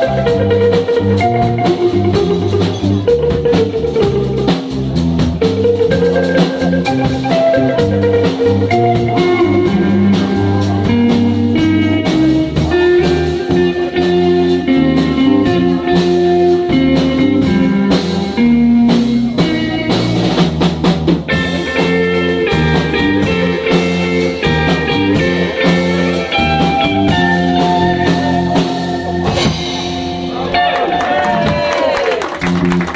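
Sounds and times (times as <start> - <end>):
live instrumental music: 0.0 - 32.9.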